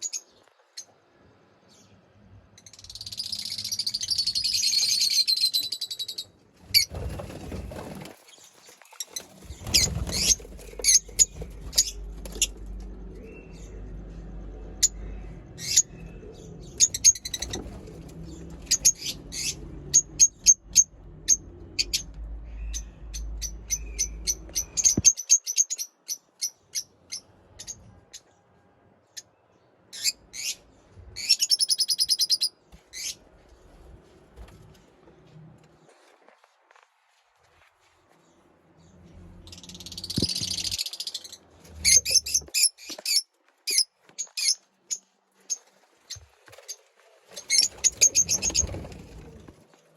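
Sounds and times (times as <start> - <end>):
low rumble: 9.5 - 25.0
lovebirds chirping: 15.6 - 27.8.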